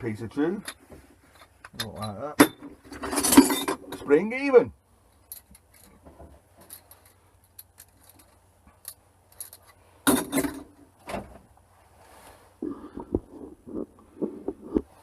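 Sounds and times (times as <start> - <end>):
scrap metal clattering: 1.3 - 4.0.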